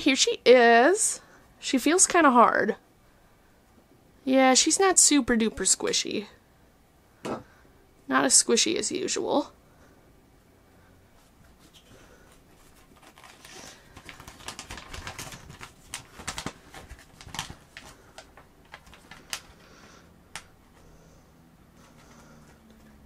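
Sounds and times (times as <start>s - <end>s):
plastic packaging crinkling: 12.6s - 19.7s.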